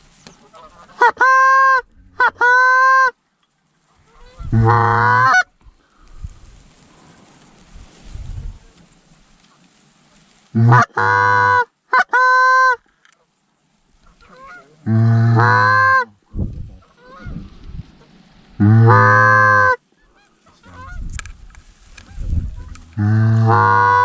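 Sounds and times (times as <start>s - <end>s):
faint goose calling: 0.0s - 3.2s, 3.8s - 6.1s, 8.8s - 24.0s
goose honking: 0.4s - 3.1s, 3.9s - 5.5s, 10.5s - 12.8s, 14.0s - 16.2s, 16.8s - 21.1s, 21.9s - 24.0s.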